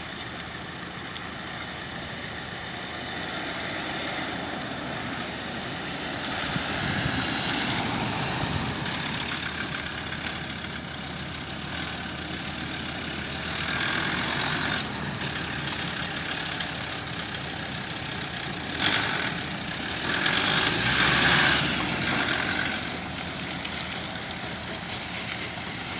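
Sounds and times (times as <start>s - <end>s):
car engine idling: 0.0s - 25.9s.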